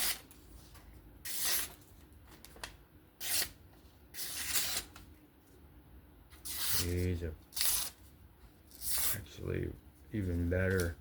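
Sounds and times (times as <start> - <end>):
knife slicing paper: 0.0 - 0.4, 1.2 - 1.8, 3.2 - 5.0, 6.4 - 8.0.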